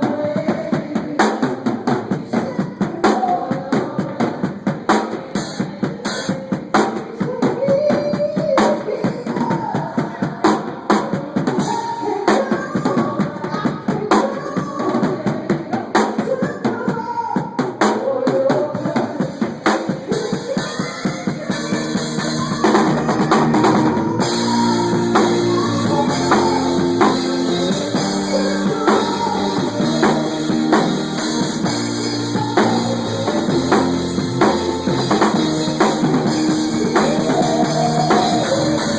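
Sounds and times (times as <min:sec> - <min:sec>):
live band music: 0:18.9 - 0:38.9.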